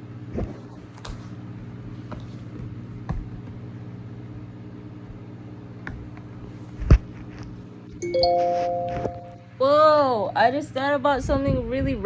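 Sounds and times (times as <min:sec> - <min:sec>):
guitar strings plucked: 0:08.0 - 0:09.4.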